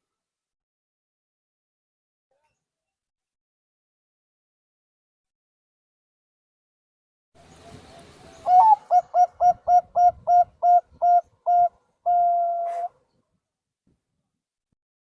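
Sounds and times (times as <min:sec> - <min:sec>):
dove cooing: 0:07.5 - 0:13.0.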